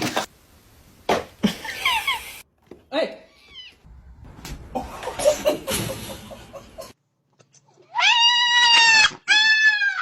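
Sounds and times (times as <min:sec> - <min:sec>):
cat yowling: 0:07.9 - 0:10.0.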